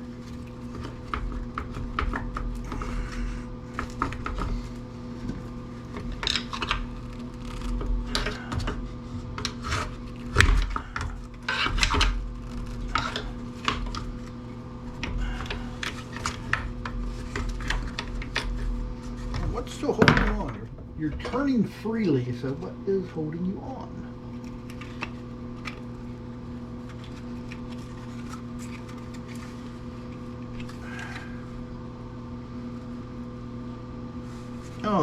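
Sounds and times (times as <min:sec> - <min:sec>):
low electrical hum: 0:00.0 - 0:35.0.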